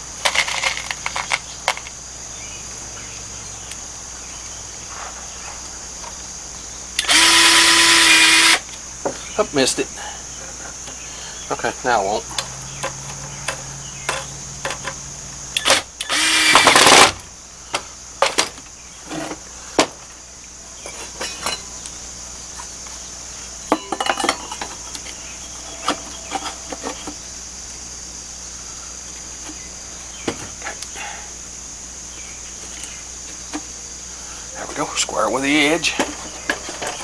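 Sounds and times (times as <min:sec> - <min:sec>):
crickets chirring: 0:00.0 - 0:37.0
drill running: 0:07.0 - 0:08.6, 0:15.6 - 0:17.1
wood and tools knocking: 0:12.4 - 0:15.0.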